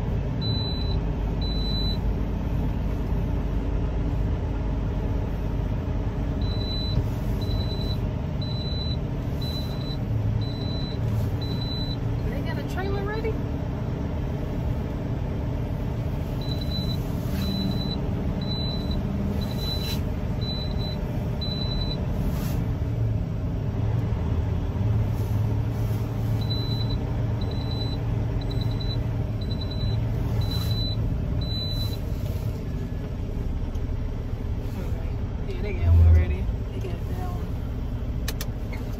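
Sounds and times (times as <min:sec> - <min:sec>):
truck engine running: 0:00.0 - 0:38.9
reversing alarm beeping: 0:00.4 - 0:02.0, 0:06.4 - 0:12.0, 0:16.4 - 0:22.0, 0:26.4 - 0:32.0.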